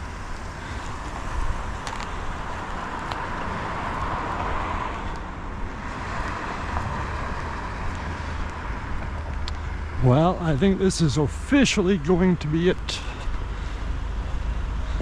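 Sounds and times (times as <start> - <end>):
vehicle rumble and hiss: 0.0 - 15.0.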